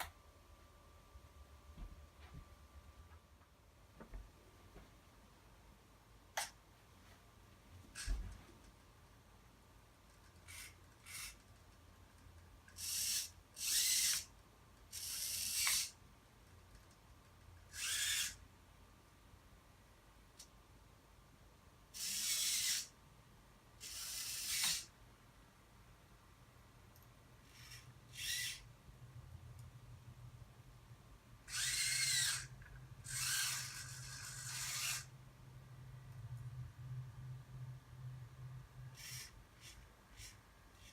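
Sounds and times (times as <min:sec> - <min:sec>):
servo motors whirring: 0:10.5 - 0:11.4, 0:12.8 - 0:14.3, 0:14.9 - 0:16.0, 0:17.7 - 0:18.4, 0:22.0 - 0:22.9, 0:23.8 - 0:24.9, 0:27.5 - 0:28.6, 0:31.5 - 0:35.1, 0:38.9 - 0:40.9.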